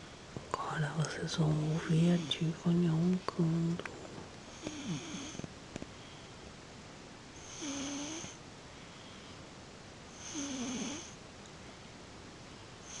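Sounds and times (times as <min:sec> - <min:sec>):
person snoring: 0:04.5 - 0:05.4, 0:07.4 - 0:08.4, 0:10.2 - 0:11.2.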